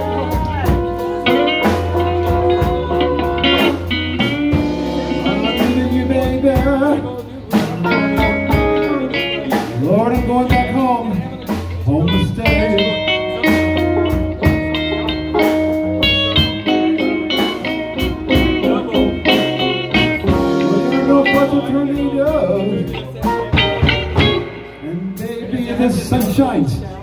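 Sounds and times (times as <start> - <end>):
guitar picking lead notes: 0.0 - 26.6
band playing slow blues: 0.0 - 27.0
bass line: 0.0 - 27.0
drum strikes: 12.4 - 24.7.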